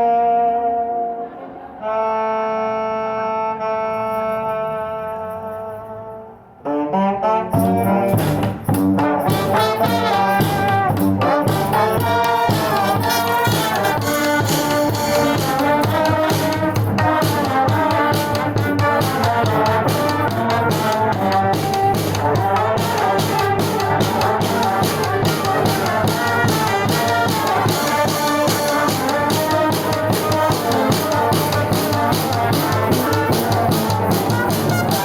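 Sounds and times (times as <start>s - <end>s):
brass band playing: 0.0s - 35.0s
held horn chord: 0.0s - 35.0s
steady drum beat: 7.6s - 35.0s.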